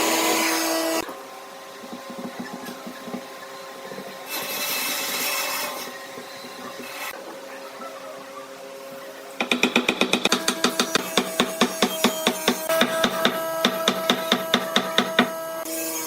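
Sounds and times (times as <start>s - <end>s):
woodworking machine: 0.0s - 1.0s, 2.0s - 7.2s, 9.4s - 16.0s.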